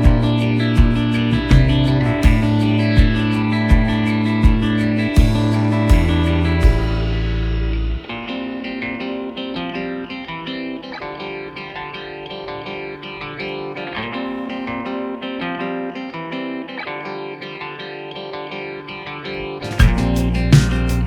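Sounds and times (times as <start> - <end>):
plucked guitar music: 0.0 - 21.0.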